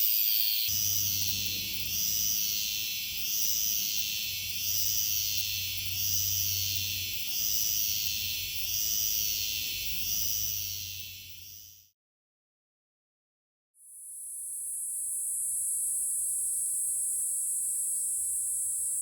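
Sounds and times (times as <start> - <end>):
cicadas buzzing: 0.0 - 11.9, 14.3 - 19.0
low hum: 0.7 - 7.3.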